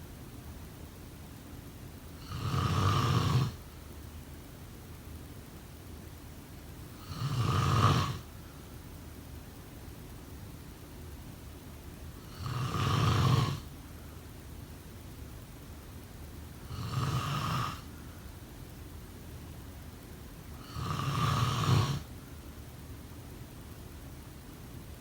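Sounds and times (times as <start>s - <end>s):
person snoring: 2.2s - 3.6s, 7.0s - 8.3s, 12.2s - 13.7s, 16.7s - 17.9s, 20.6s - 22.1s.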